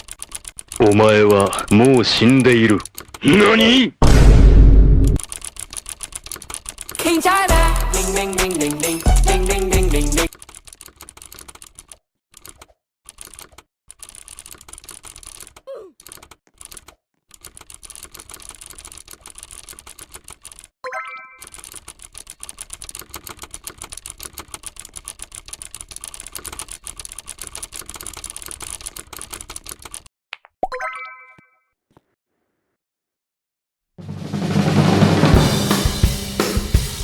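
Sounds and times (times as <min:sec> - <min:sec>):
computer keyboard typing: 0:00.0 - 0:03.7, 0:05.1 - 0:20.8, 0:21.4 - 0:30.1.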